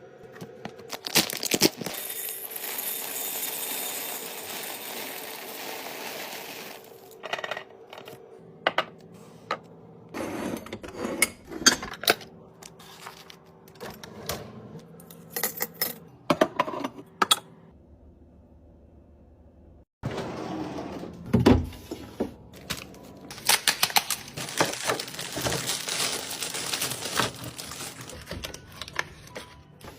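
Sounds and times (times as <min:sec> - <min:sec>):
packaging crinkling: 0:00.9 - 0:02.0, 0:22.6 - 0:29.4
plastic containers clicking and clattering: 0:22.6 - 0:29.4.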